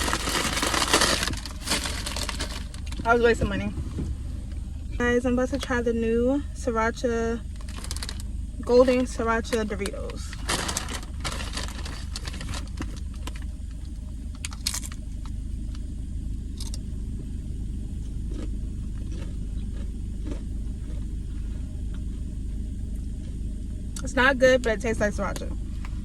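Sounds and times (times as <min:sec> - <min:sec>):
chip bag crinkling: 0:00.0 - 0:03.1, 0:07.5 - 0:09.1, 0:09.8 - 0:13.5
chips crunching being chewed: 0:00.0 - 0:03.2, 0:07.5 - 0:13.5, 0:18.0 - 0:22.2
low rumble: 0:00.0 - 0:26.0.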